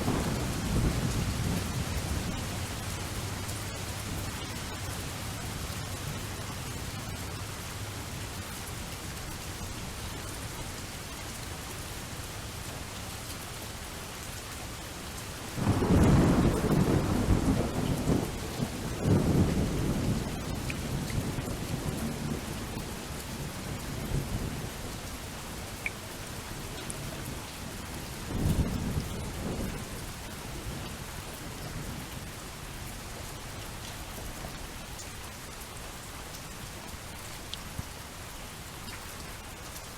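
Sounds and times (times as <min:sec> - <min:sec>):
thunder rumbling: 0:00.0 - 0:03.6, 0:15.6 - 0:22.8
steady rain falling: 0:00.0 - 0:39.9.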